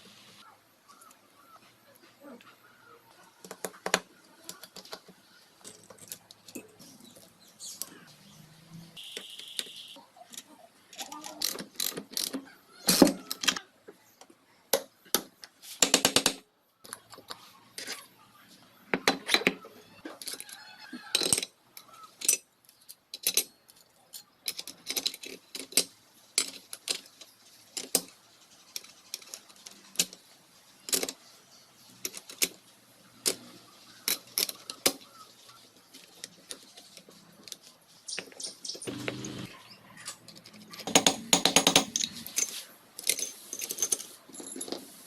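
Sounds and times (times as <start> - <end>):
metal tools clinking: 5.6 - 8.1, 38.9 - 45.0.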